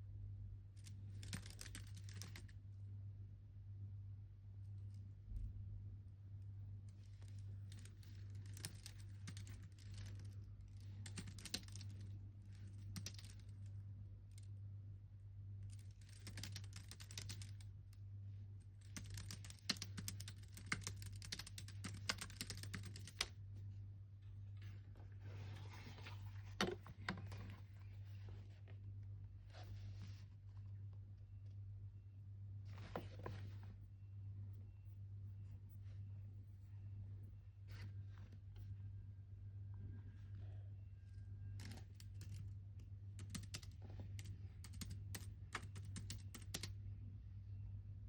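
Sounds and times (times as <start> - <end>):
steady low hum: 0.0 - 48.0
typing on computer keyboard: 11.0 - 12.0, 12.8 - 13.4, 15.8 - 17.6, 18.9 - 23.3, 43.2 - 46.8.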